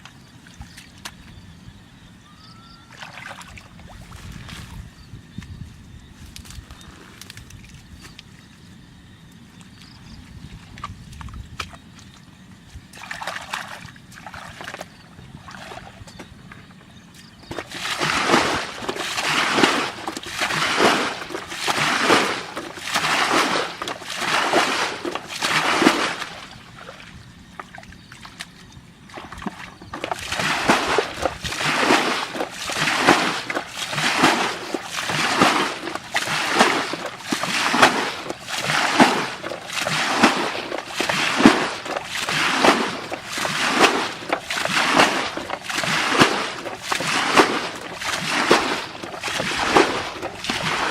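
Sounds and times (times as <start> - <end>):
rhythmic splashing in water: 17.5 - 26.6, 28.3 - 50.9.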